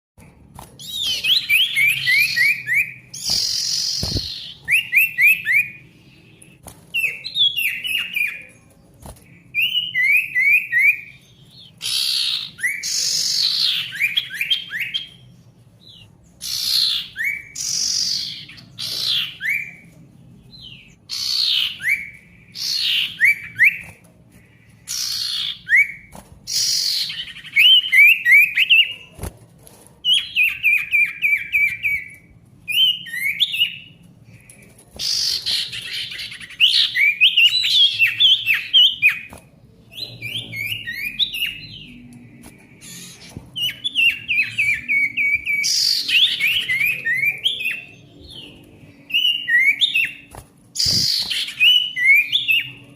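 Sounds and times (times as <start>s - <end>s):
songbird whistled notes: 0.8s - 8.5s, 49.1s - 52.8s.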